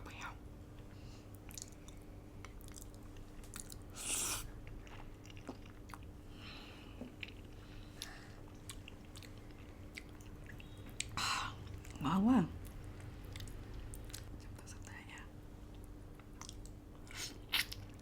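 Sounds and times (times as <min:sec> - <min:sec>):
close chewing: 0:07.2 - 0:11.1.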